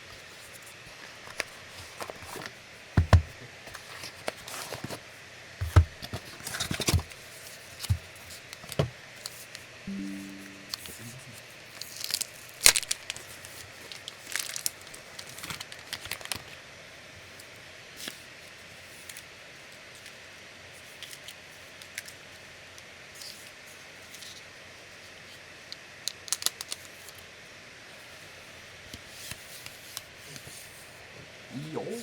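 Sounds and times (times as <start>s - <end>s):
packaging rustling and tearing: 0.9s - 2.6s, 3.7s - 5.0s, 6.0s - 7.1s, 13.9s - 16.5s.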